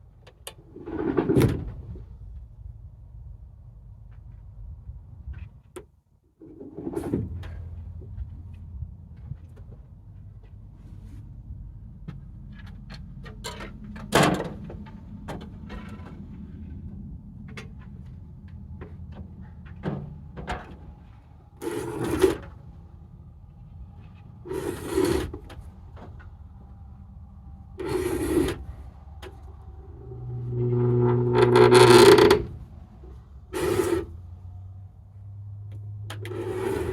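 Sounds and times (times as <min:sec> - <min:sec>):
low steady hum: 0:10.0 - 0:36.9.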